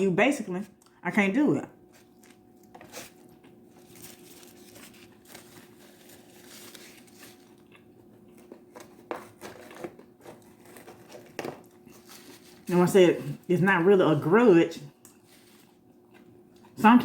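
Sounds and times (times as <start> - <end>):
faint steady hum: 0.0 - 17.0
food wrapping crinkling: 1.8 - 13.5, 15.0 - 16.8
soft chewing: 1.9 - 9.4, 14.9 - 16.8.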